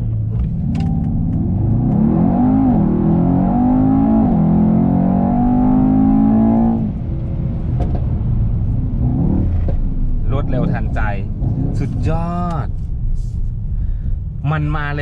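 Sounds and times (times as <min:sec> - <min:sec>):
car engine accelerating hard: 0:00.2 - 0:12.2.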